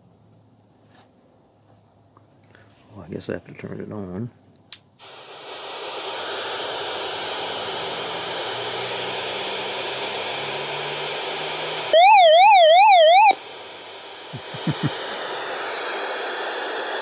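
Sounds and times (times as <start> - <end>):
radio static hiss: 11.3 - 17.0
electronic siren warbling: 11.9 - 13.4.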